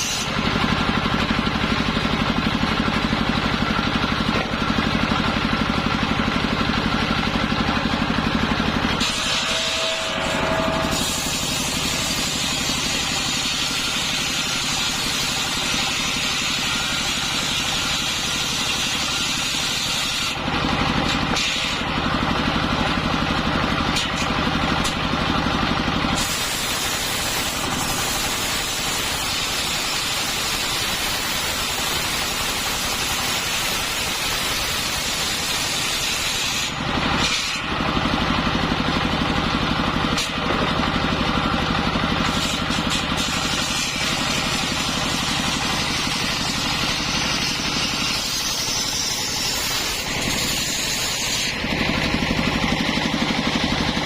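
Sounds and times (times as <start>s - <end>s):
engine droning: 0.0s - 14.6s
disc saw cutting wood: 0.0s - 23.0s, 26.1s - 39.1s, 40.1s - 40.8s, 41.4s - 53.0s.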